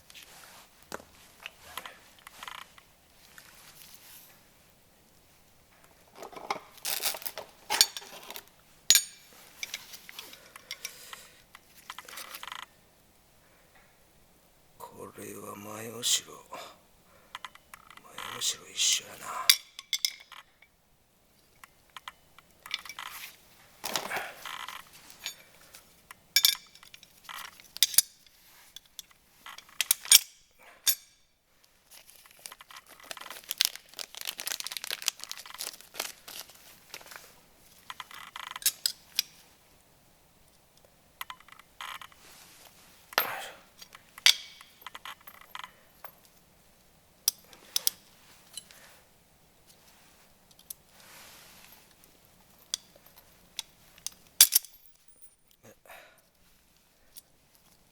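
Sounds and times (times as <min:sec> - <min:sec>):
metal parts clinking: 0:06.2 - 0:11.0, 0:19.5 - 0:20.7, 0:22.6 - 0:25.6, 0:26.4 - 0:31.2, 0:37.9 - 0:39.4, 0:43.2 - 0:46.3, 0:52.6 - 0:55.4
plastic packaging crinkling: 0:06.8 - 0:08.5, 0:31.9 - 0:37.3.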